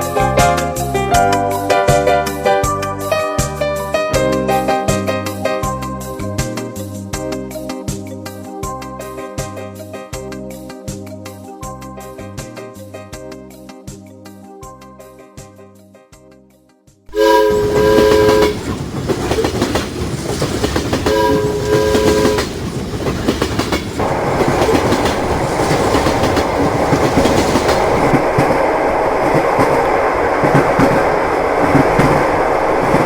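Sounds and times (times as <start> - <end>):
quiet piano music: 0.0 - 6.8
train horn blasts: 17.1 - 18.7, 21.0 - 22.6
train rumbling on rails: 17.1 - 33.0.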